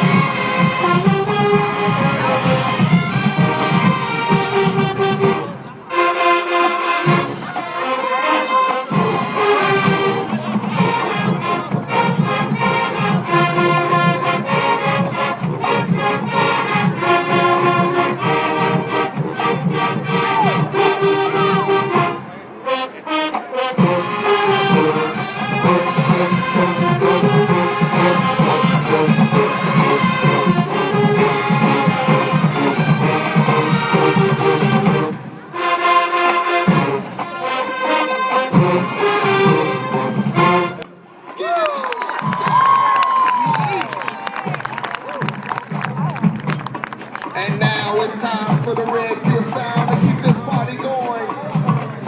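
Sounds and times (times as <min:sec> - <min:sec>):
marching band brass: 0:00.0 - 0:52.0
drum cadence: 0:45.3 - 0:52.0.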